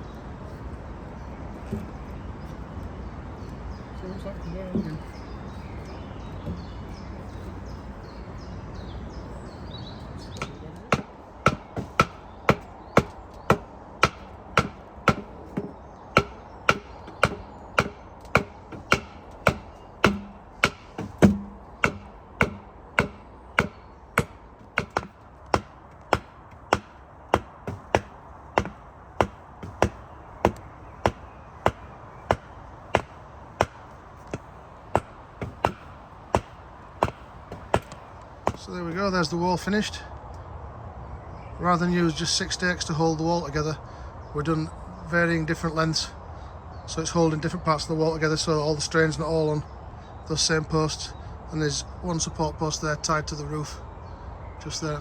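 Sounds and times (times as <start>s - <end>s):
sharp knocks: 6.4s - 6.7s, 10.4s - 38.7s.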